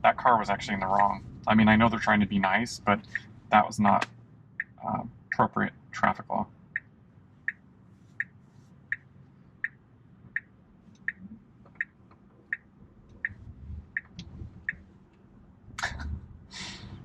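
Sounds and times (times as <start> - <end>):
faint low hum: 0.0 - 17.0
turn signal ticking: 3.9 - 5.4, 6.0 - 16.5.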